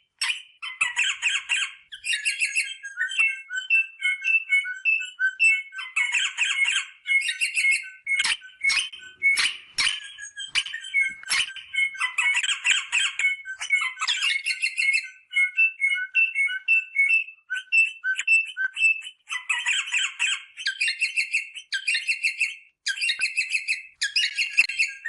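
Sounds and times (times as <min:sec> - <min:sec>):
parrots calling: 0:00.6 - 0:03.2, 0:05.8 - 0:15.4, 0:19.3 - 0:25.0.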